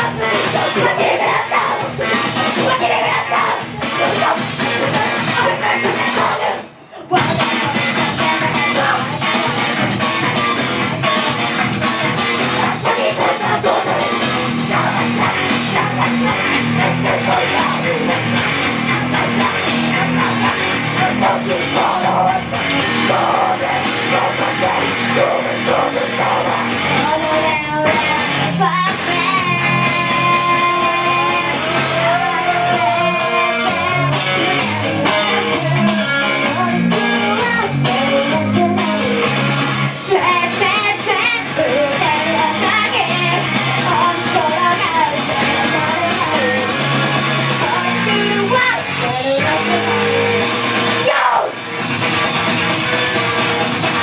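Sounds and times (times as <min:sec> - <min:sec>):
person singing: 0:00.0 - 0:51.6
live rock song: 0:00.0 - 0:54.0.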